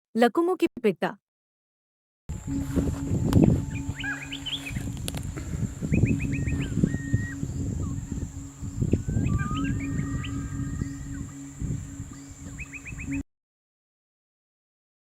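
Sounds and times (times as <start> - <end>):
low pulsing hum: 2.3 - 13.2
bird chirps and whistles: 3.6 - 4.9, 5.8 - 11.5, 12.1 - 13.2.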